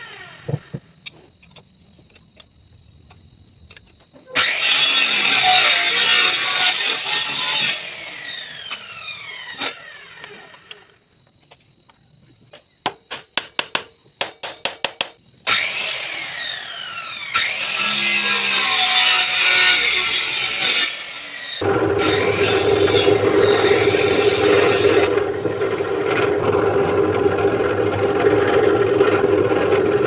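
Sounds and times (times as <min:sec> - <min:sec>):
drum sander grinding wood: 0:18.4 - 0:30.0.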